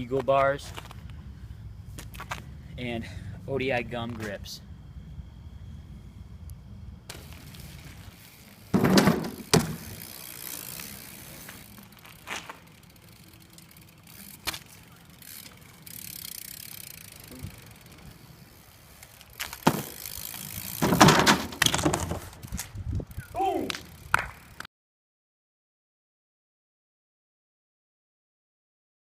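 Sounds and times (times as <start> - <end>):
bike tyres rolling hiss: 0.0 - 24.6
bike frame knocking and clattering: 7.1 - 12.8, 19.3 - 22.8.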